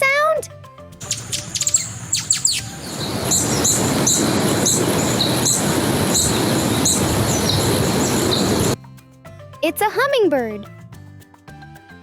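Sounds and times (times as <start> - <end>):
hummingbird chirps: 1.0 - 8.8
hummingbird wings whirring: 1.0 - 8.8.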